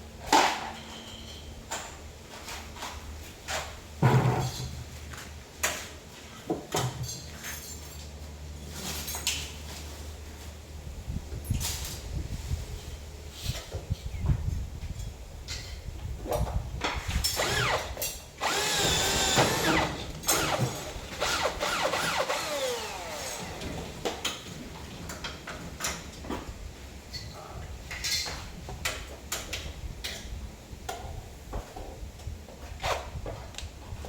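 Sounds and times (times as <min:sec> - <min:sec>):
power drill running: 0:17.4 - 0:24.1.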